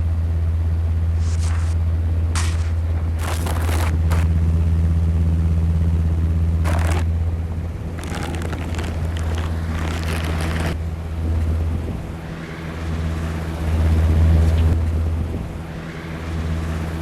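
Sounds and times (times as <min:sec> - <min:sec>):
low hum: 0:00.0 - 0:17.0
crackles and pops: 0:02.4 - 0:04.3, 0:06.6 - 0:07.1, 0:07.9 - 0:10.8.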